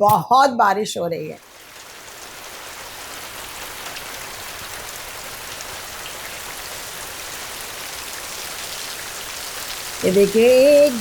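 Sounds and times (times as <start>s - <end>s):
heavy rain falling: 1.4s - 11.0s.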